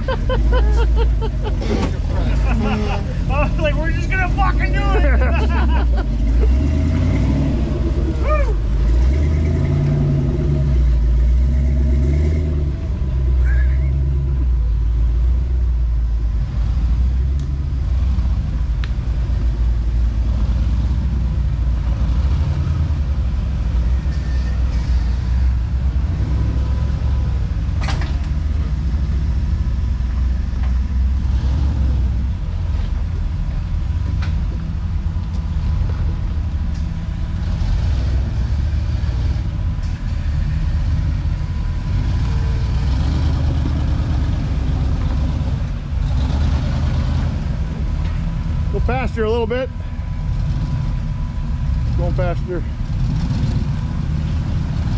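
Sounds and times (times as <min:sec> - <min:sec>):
engine rumbling under load: 0:00.0 - 0:54.9.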